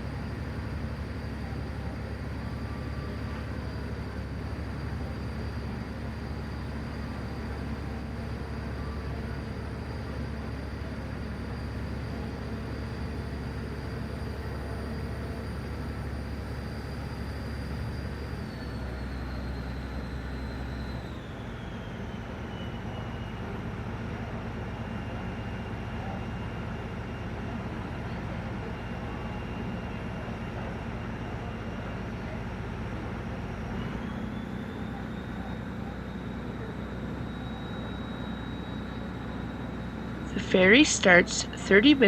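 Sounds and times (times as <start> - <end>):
thin high engine whine: 0.0 - 23.5, 33.7 - 42.0
boat engines droning: 0.0 - 42.0.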